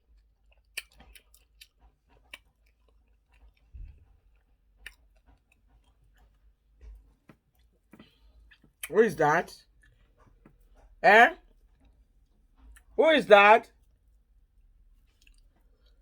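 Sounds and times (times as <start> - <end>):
wet chewing mouth clicks: 0.1 - 9.0, 15.0 - 16.0.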